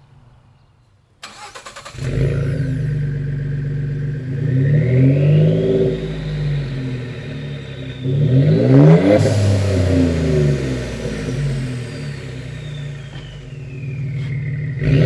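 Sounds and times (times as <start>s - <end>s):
engine cranking: 1.2s - 3.1s
car engine running and revving: 1.9s - 15.0s.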